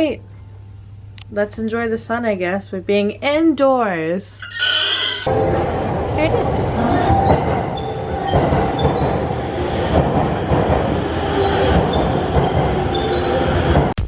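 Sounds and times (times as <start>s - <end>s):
wheel squeals: 4.4s - 5.3s
train rumbling on rails: 5.3s - 14.0s.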